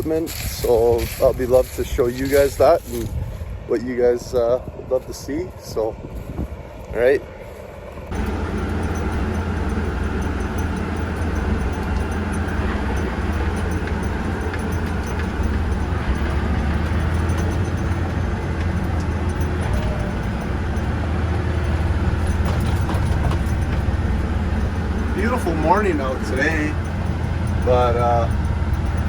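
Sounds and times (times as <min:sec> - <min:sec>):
tractor engine droning: 0:00.0 - 0:29.0.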